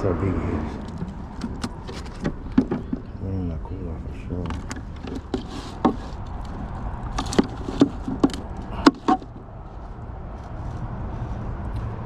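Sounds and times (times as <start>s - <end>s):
sharp knocks and clicks: 0.8s - 3.1s, 4.4s - 9.4s.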